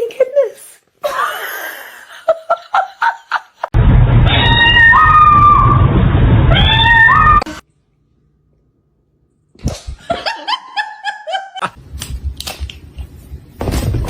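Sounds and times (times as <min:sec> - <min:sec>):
loud low rumbling: 0:03.8 - 0:07.5
cat meowing: 0:04.2 - 0:05.8, 0:06.5 - 0:07.5.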